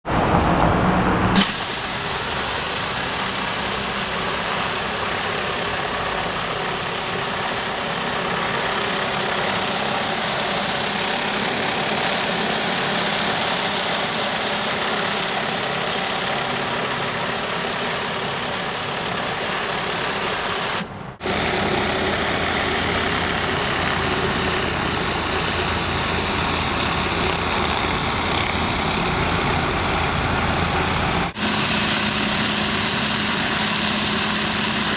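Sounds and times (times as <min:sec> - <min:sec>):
pressure washer engine hum: 0:00.8 - 0:34.9
high-pressure water spray hiss: 0:01.4 - 0:34.9.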